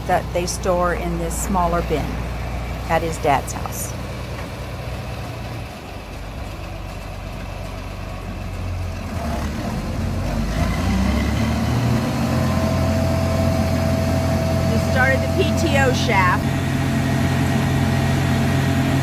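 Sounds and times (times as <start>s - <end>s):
tractor engine running: 0.0s - 19.0s
thin steady whine: 12.5s - 18.2s.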